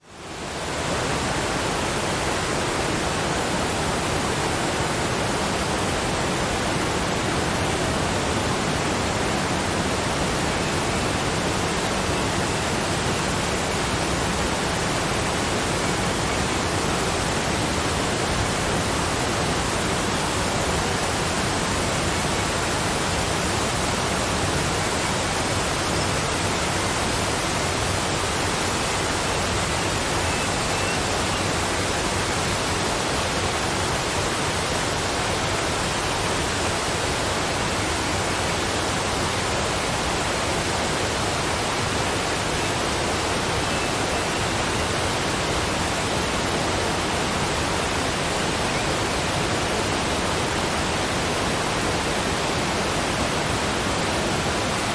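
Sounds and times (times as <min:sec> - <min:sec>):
waterfall rushing: 0:00.1 - 0:54.9.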